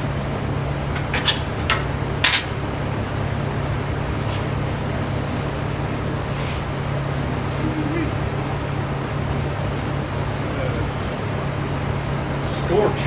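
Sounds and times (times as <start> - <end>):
loud background hum: 0.0 - 13.0
metal parts clinking: 0.2 - 2.7.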